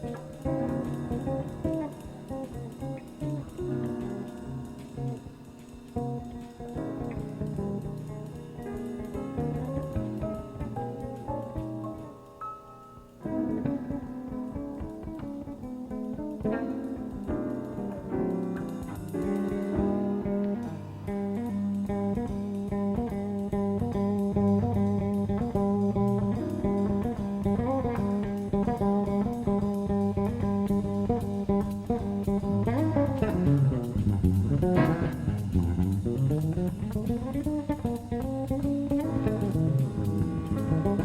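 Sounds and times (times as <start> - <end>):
jazz-funk band playing: 0.0 - 12.1, 13.2 - 41.0
guitar line: 0.0 - 12.4, 13.2 - 41.0
electric bass: 18.8 - 41.0.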